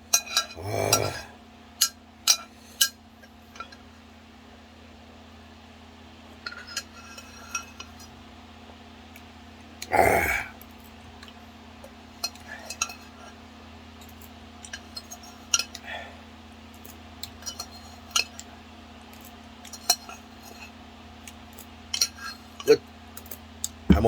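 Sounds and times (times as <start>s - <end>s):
steady low hum: 23.7s - 24.0s.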